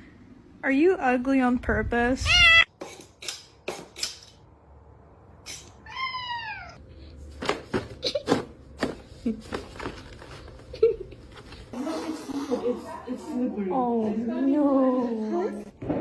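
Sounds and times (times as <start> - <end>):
cat meowing: 2.2 - 2.7, 5.8 - 6.8.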